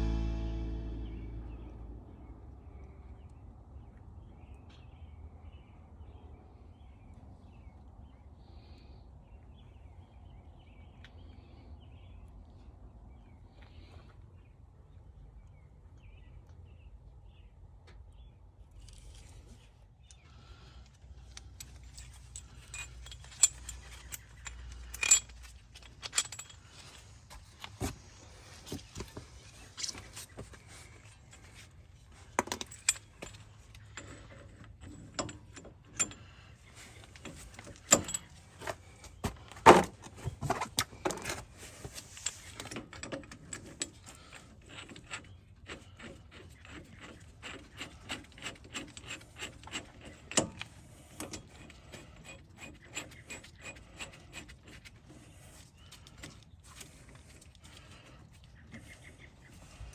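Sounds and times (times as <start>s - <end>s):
metal tools clinking and scraping: 21.3s - 27.5s.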